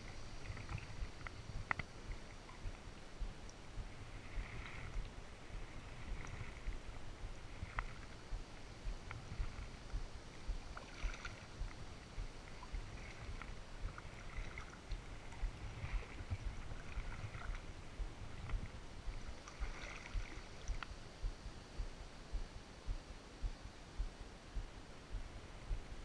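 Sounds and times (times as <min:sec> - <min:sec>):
paddle splashing in water: 0:00.0 - 0:02.9, 0:03.9 - 0:20.9
wind buffeting microphone: 0:00.0 - 0:26.0.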